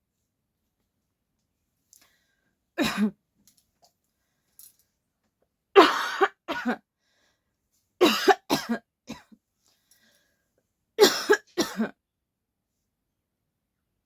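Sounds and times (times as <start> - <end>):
person coughing: 2.8 - 3.2, 5.8 - 6.8, 8.0 - 9.4, 11.0 - 12.0.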